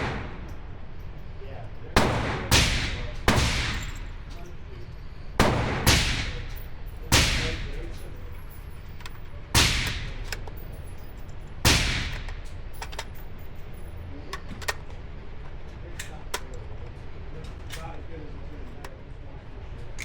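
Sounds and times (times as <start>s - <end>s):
gunshots with echo: 0.0s - 0.5s, 2.0s - 4.3s, 5.4s - 8.1s, 9.5s - 10.5s, 11.6s - 12.4s.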